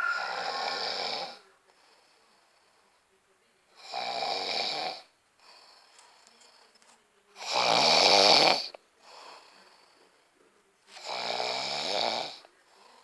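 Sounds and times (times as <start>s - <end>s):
faint breath: 0.0s - 2.5s, 9.0s - 10.2s, 12.6s - 13.0s.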